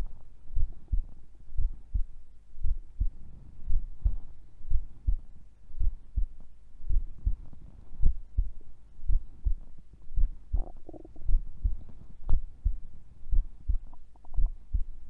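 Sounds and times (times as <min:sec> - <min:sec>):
heartbeat thumps: 0:00.0 - 0:15.0
stomach gurgle: 0:10.5 - 0:12.2, 0:13.8 - 0:14.6.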